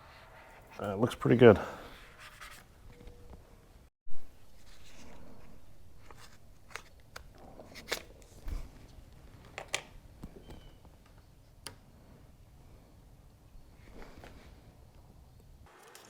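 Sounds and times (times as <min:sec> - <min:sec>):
handling clicks and crinkles: 0:04.7 - 0:11.8.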